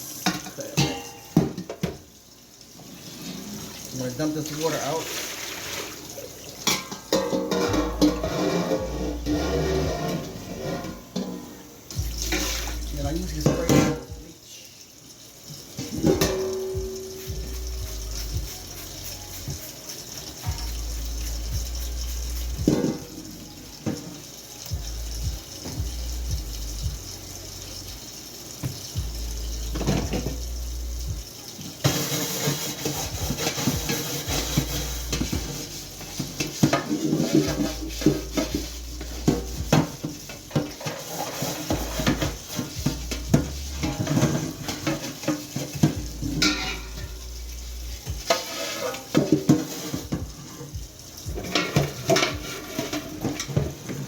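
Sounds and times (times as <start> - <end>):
tap water running: 0.0 - 54.0
pot knocking and scraping in sink: 0.2 - 2.0, 6.6 - 14.3, 15.8 - 24.2, 28.6 - 30.5, 31.8 - 47.4, 48.0 - 54.0.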